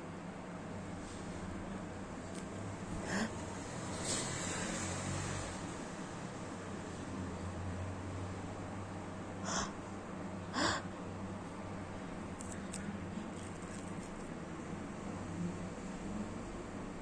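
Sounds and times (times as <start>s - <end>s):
person sneezing: 3.0s - 3.4s, 9.5s - 9.7s, 10.6s - 10.8s.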